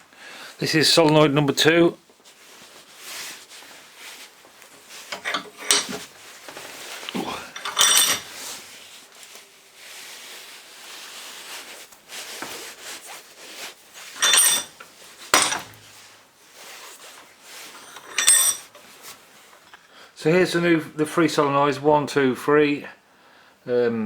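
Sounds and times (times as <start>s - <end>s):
metal parts sliding and rubbing: 4.8s - 9.4s, 11.7s - 19.2s
sharp metallic clinks: 7.5s - 8.3s, 14.2s - 14.8s, 15.4s - 15.8s, 17.8s - 18.7s.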